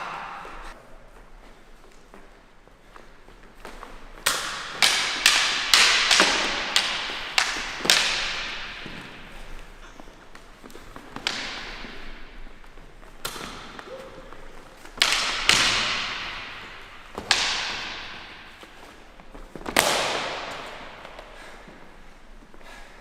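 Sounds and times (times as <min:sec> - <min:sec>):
sword blades clashing: 0:04.3 - 0:09.4, 0:14.9 - 0:19.0.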